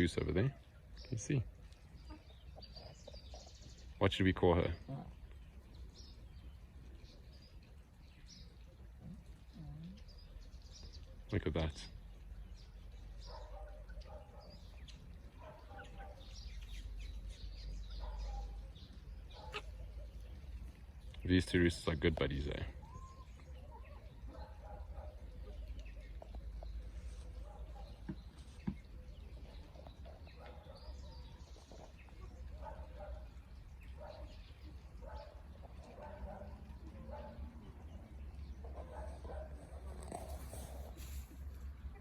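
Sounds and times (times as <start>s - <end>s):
birds chirping: 0.0s - 42.0s
poultry calls: 19.3s - 20.1s
poultry low calls: 19.4s - 20.0s, 38.6s - 41.4s.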